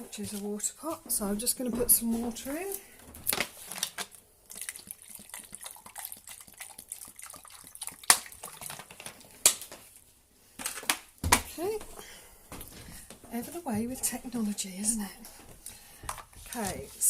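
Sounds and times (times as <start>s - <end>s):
water pouring and splashing: 4.4s - 10.0s.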